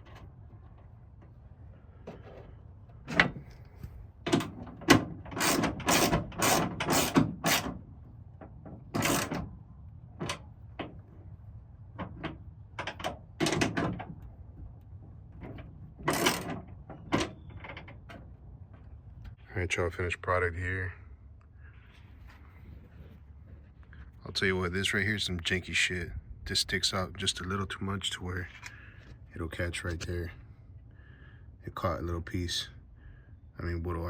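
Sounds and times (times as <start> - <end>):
tools knocking and scraping metal: 4.2 - 7.8, 8.4 - 9.6, 12.0 - 14.3, 15.3 - 18.9.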